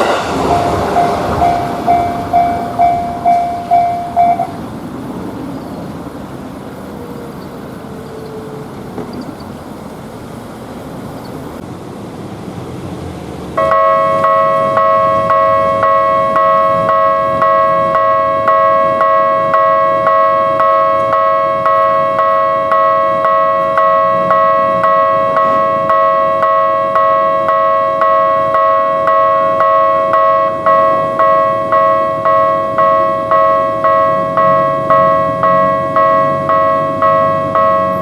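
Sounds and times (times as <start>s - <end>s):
level-crossing warning bell clanging: 0.0s - 11.6s, 13.6s - 38.0s.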